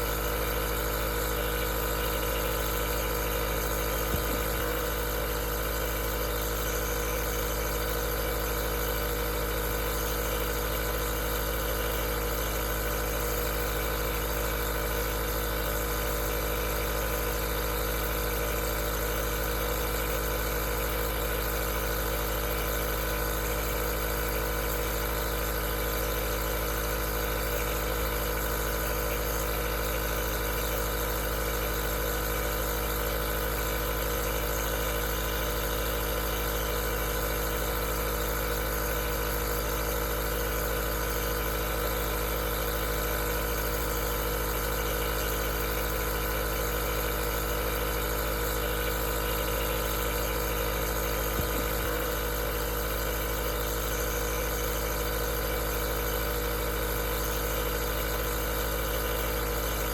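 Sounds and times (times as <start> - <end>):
nebulizer motor hum: 0.0 - 59.9
air hissing: 1.4 - 7.3, 48.7 - 52.2.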